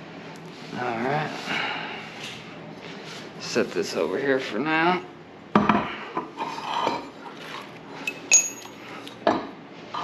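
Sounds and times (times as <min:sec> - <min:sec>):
metal tools clanking: 0:08.0 - 0:08.8
sharp metallic clinks: 0:08.1 - 0:08.8.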